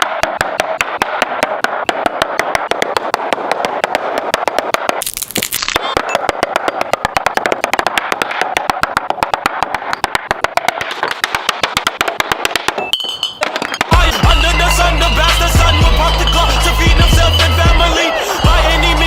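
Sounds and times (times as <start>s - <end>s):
glass bottles clanking: 12.7s - 14.3s.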